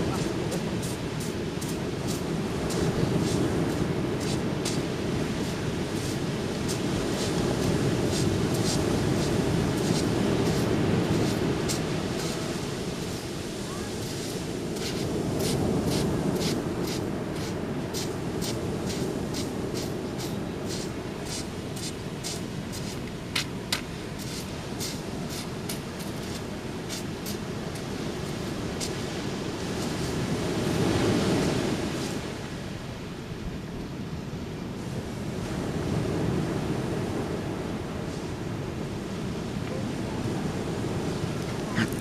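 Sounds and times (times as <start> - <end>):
footsteps crunching on sand: 0.0 - 13.2, 14.0 - 30.3
ocean surf: 0.0 - 42.0.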